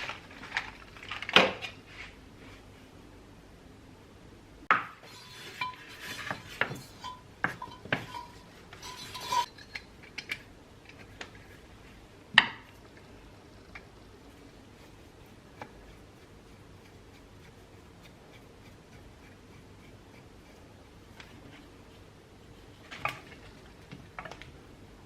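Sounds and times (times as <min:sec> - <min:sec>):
small metal objects clinking: 0:05.2 - 0:10.4.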